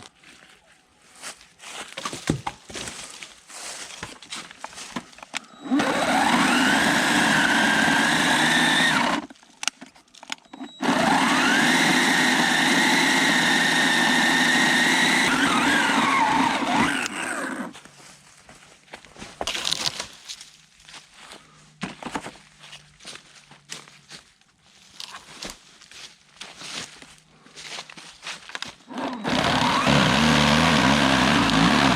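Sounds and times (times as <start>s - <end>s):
electric chainsaw whining: 5.3s - 9.4s, 10.4s - 17.8s, 28.6s - 31.9s.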